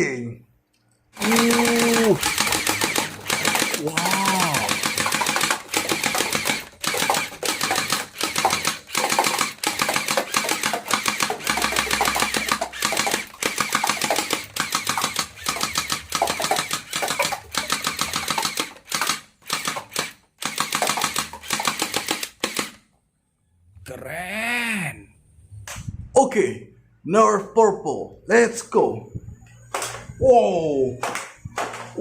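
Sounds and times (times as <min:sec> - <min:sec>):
toy rifle firing rapid bursts: 0:01.2 - 0:22.8.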